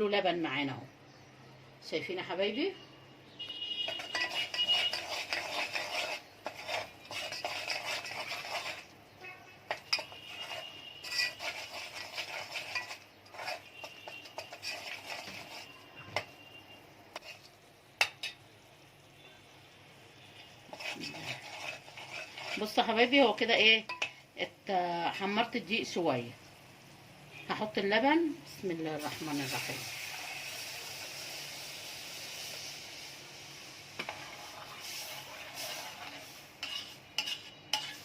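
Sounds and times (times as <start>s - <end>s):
spoon scraping in a pot: 3.8s - 8.9s, 9.7s - 16.5s, 17.1s - 18.4s, 20.4s - 24.2s, 34.0s - 38.0s.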